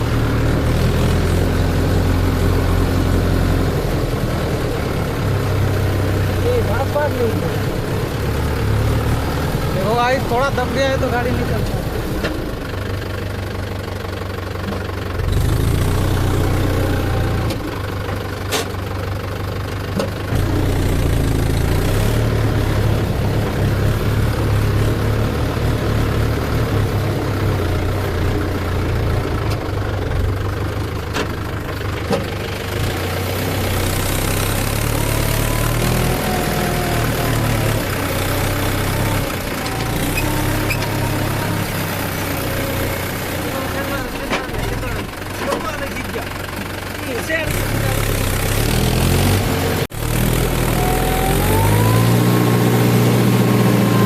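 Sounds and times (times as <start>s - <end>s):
tractor diesel engine revving: 0.0s - 54.0s.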